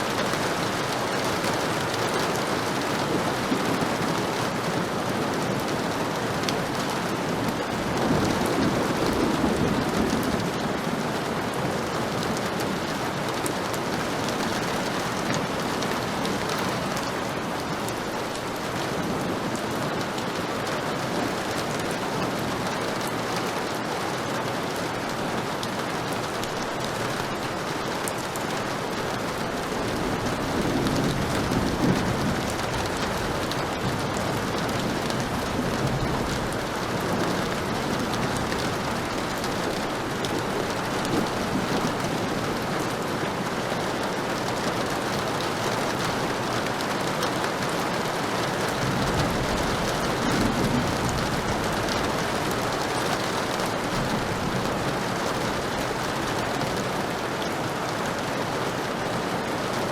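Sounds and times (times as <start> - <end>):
heavy rain falling: 0.0 - 59.9
low thunder rumble: 29.7 - 42.7.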